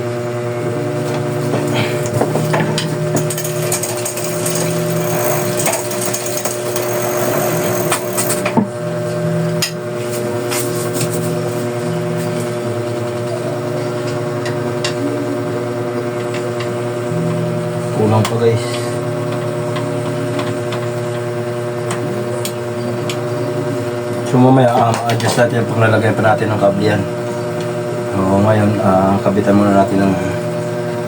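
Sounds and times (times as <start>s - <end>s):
steady hum: 0.0s - 31.0s
scattered clicks and knocks: 2.1s - 8.7s
bicycle chain running over sprockets: 3.2s - 8.5s.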